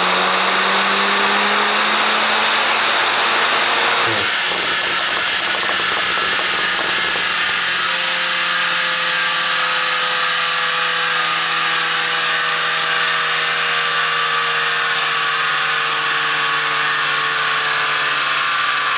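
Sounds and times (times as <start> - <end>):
car engine exhaust running: 4.0 - 7.8.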